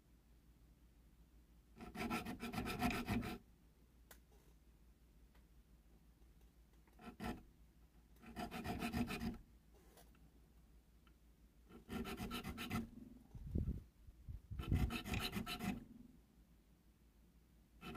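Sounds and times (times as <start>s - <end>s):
file rasping on metal: 1.8s - 3.4s, 7.0s - 7.4s, 8.2s - 9.4s, 11.7s - 12.9s, 14.6s - 15.9s.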